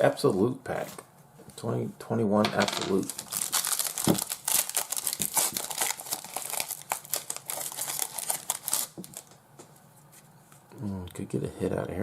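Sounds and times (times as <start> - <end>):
wrapper crinkling and tearing: 2.9 - 9.4.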